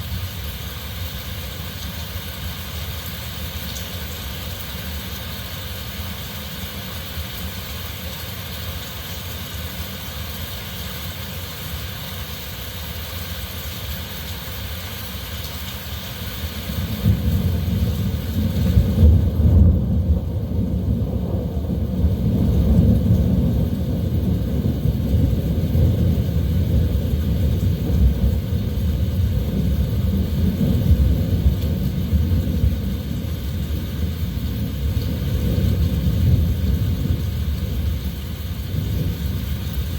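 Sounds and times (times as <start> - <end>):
heavy rain hiss: 0.0 - 39.9
low wind rumble: 16.4 - 39.9.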